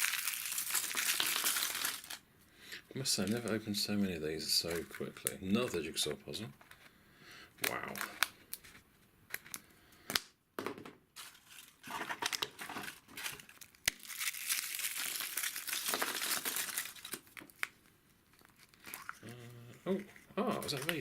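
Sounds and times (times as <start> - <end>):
foil wrapper crinkling: 0.0 - 2.2, 11.2 - 19.2, 20.0 - 21.0.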